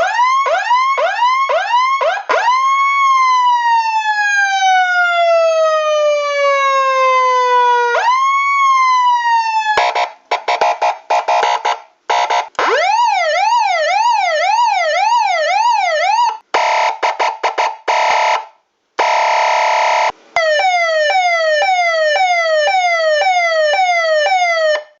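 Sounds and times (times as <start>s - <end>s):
rapid falling siren sweeps: 0.0s - 16.4s
choppy horn-like siren blasts: 0.0s - 24.9s
fast siren wail: 0.0s - 24.9s
siren wailing: 0.0s - 24.9s.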